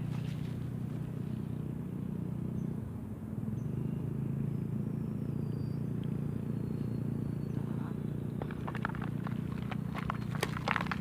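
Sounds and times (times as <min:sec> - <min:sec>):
low mechanical hum: 0:00.0 - 0:11.0
faint high whistles: 0:04.5 - 0:07.9.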